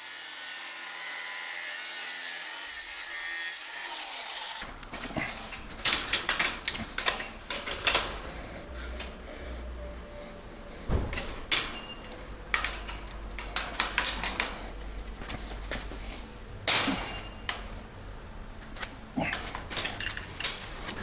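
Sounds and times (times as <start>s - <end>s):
metal clicks and clanks: 4.8s - 9.2s, 11.0s - 15.4s, 18.8s - 21.0s.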